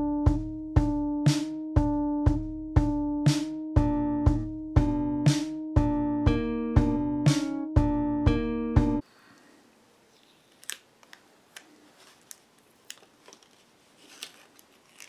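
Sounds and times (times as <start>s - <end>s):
music with plucked notes: 0.0s - 9.0s.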